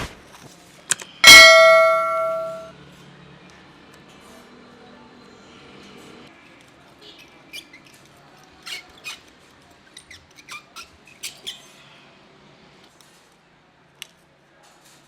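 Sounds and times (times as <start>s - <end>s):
squeaks and clicks on tire: 7.0s - 11.8s.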